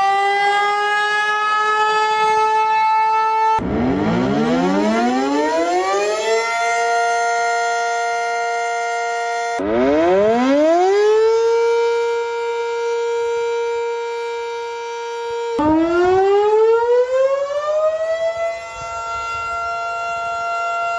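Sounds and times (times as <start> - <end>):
outdoor warning siren wailing: 0.0 - 20.9
second siren rising in pitch: 0.0 - 20.9.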